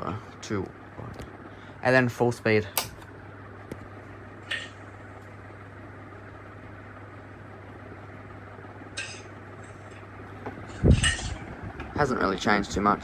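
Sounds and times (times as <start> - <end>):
ceiling fan motor hum: 0.0 - 13.0
fan blades rushing: 0.0 - 13.0.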